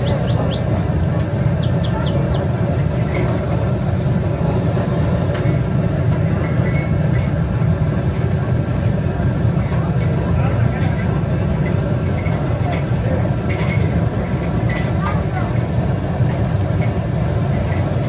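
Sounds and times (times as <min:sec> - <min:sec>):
bird chirping falling notes: 0:00.0 - 0:02.5
steady low rumble: 0:00.0 - 0:18.0.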